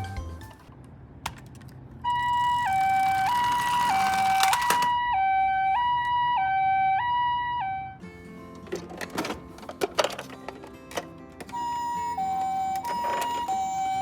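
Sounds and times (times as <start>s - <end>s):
toy ambulance two-tone siren: 2.0s - 8.0s, 11.4s - 14.0s.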